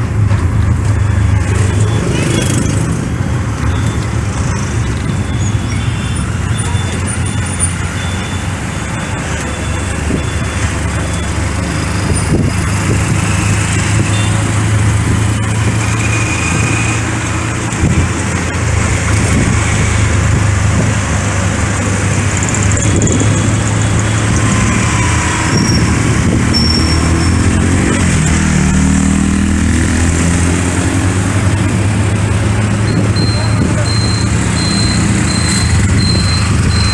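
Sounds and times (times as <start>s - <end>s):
traffic noise: 0.0s - 36.9s
short high-pitched tones: 32.8s - 36.9s.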